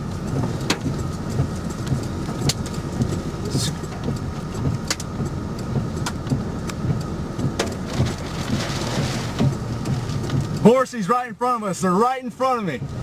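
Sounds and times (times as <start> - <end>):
car road and engine rumble: 0.0 - 13.0.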